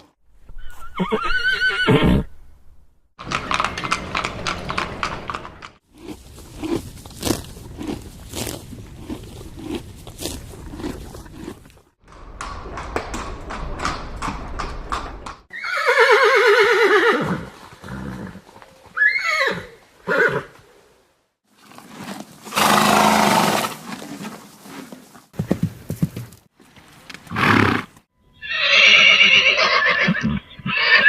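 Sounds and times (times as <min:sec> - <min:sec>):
horse whinny: 0:00.6 - 0:02.3, 0:15.5 - 0:18.4, 0:19.0 - 0:20.5, 0:27.3 - 0:31.0
horse snorting: 0:03.2 - 0:11.9, 0:21.8 - 0:24.4
hooves clip-clopping: 0:03.2 - 0:15.4, 0:23.8 - 0:27.4.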